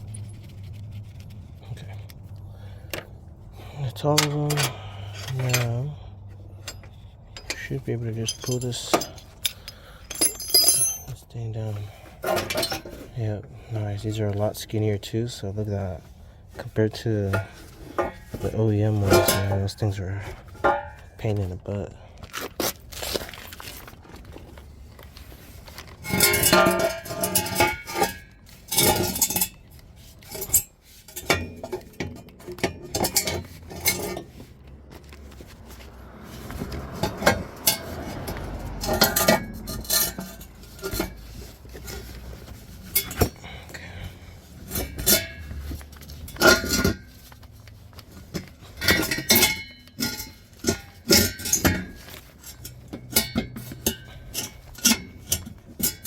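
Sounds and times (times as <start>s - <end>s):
metallic clanks and clinks: 4.1s - 11.3s, 12.2s - 13.0s, 17.3s - 19.8s, 20.4s - 21.1s, 26.0s - 34.4s, 36.4s - 47.4s, 48.2s - 56.0s.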